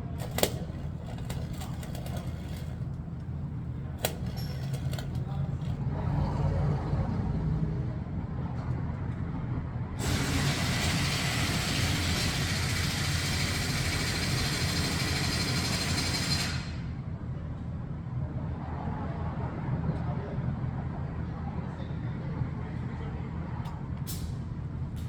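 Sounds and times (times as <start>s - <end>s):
pressurized gas hissing: 10.0s - 14.2s.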